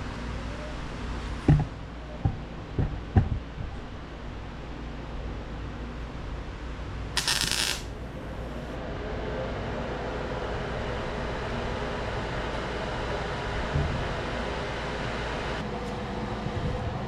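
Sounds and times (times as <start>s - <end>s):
welding crackle: 7.2s - 8.2s.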